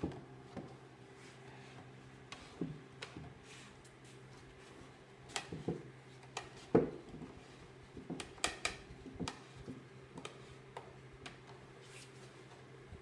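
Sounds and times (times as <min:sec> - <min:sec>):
wooden dowel knocking and clicking: 0:08.1 - 0:09.4.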